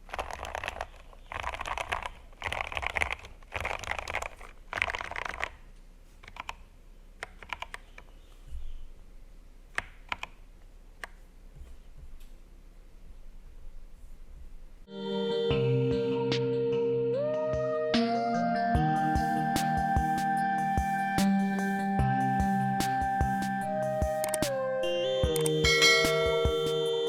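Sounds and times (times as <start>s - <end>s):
mechanical keyboard typing: 0.0s - 5.6s, 6.2s - 6.6s, 7.2s - 8.1s, 9.8s - 10.4s.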